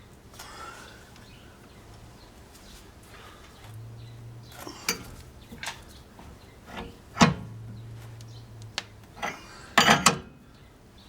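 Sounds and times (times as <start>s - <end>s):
low steady hum: 0.0s - 11.0s
metal tools clinking: 4.5s - 8.5s, 9.1s - 10.4s.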